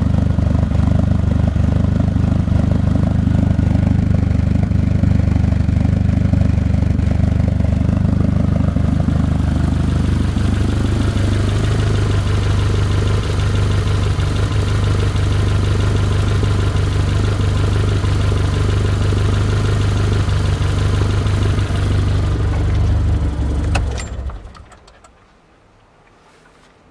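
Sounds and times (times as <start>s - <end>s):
car engine idling: 0.0s - 25.1s.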